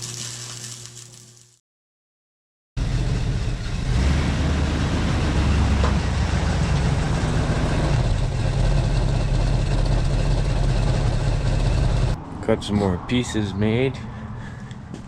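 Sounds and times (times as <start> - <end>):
engine idling: 6.2 - 12.2.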